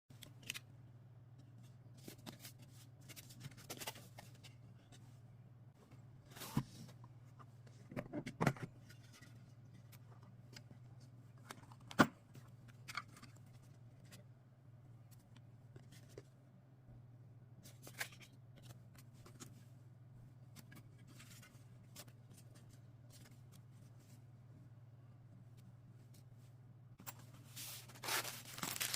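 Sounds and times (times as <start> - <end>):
faint low hum: 0.1 - 28.9
packaging rubbing and rustling: 27.6 - 28.9.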